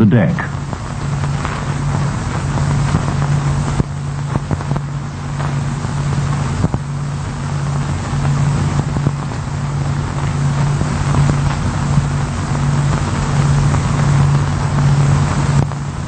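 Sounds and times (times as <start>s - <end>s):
low machine drone: 0.0s - 16.0s
old film hiss: 0.1s - 16.0s.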